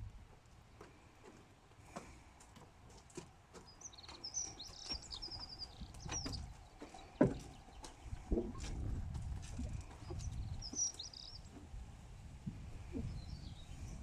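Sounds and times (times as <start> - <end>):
light taps and knocks: 0.8 - 11.7
small bird chirping and trilling: 3.6 - 8.0, 9.9 - 11.5, 13.0 - 14.0.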